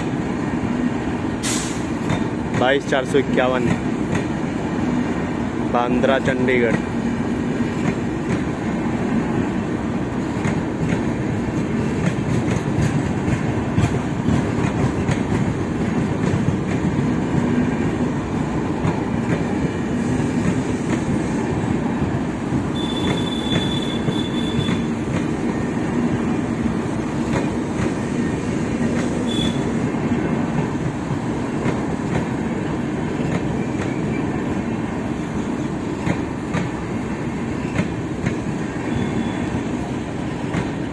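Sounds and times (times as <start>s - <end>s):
train wheels rumbling on track: 0.0s - 40.9s
high wheel squeal: 22.8s - 25.0s, 38.9s - 39.5s.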